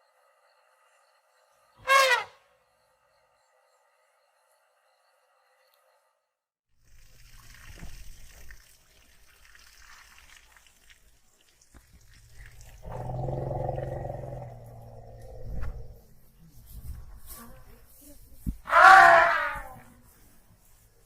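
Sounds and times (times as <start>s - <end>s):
outdoor noise: 0.0s - 21.0s
elephant roaring: 12.6s - 16.1s, 18.7s - 19.8s.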